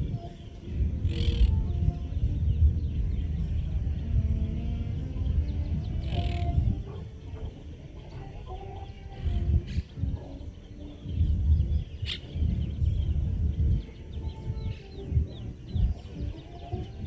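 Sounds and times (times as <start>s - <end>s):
birds chirping: 0.0s - 17.0s
distant party music bass thumps: 0.0s - 17.0s
chickens clucking: 5.4s - 17.0s.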